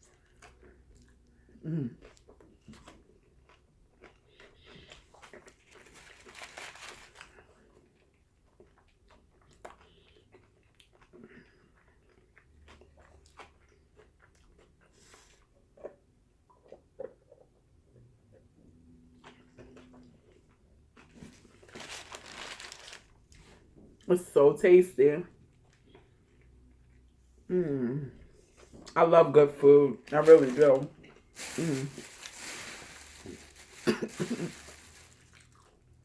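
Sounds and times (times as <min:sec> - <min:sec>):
person chewing food: 0:00.0 - 0:05.9, 0:07.2 - 0:18.5, 0:30.8 - 0:36.0.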